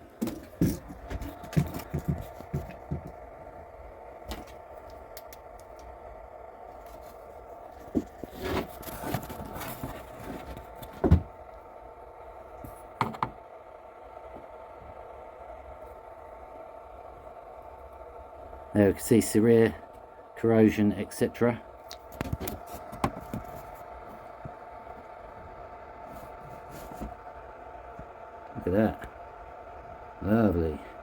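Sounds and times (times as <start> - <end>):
steady background hum: 0.0 - 31.0
handling knocks and clicks: 0.2 - 3.2.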